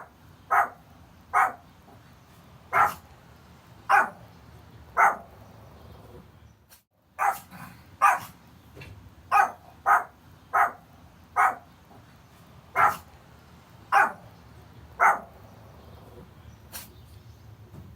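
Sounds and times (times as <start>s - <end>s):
puppy barking: 0.0s - 1.6s, 2.7s - 3.1s, 3.9s - 4.3s, 5.0s - 5.3s, 7.2s - 8.4s, 9.3s - 10.8s, 11.4s - 11.7s, 12.7s - 13.1s, 13.9s - 14.3s, 15.0s - 15.4s.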